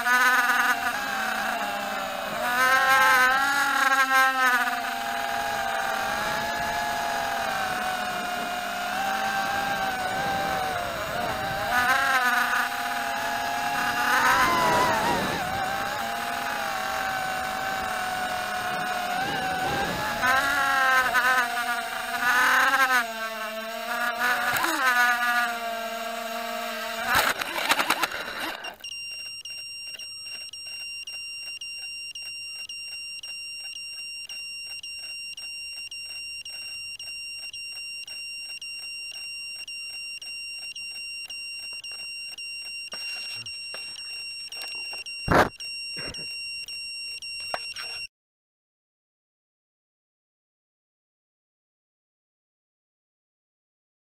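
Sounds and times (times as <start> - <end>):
quadcopter motors whining: 0.0 - 48.1
high electronic beeping: 27.1 - 48.1.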